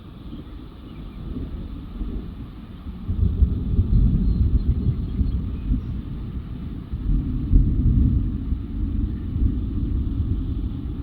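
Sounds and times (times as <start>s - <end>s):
thunder rolling: 3.0s - 11.0s.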